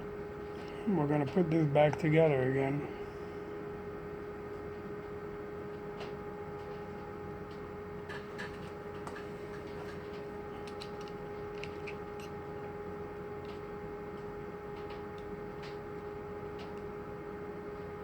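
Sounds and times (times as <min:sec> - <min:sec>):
steady hum: 0:00.0 - 0:18.0
light clicks of lock parts: 0:10.6 - 0:12.4.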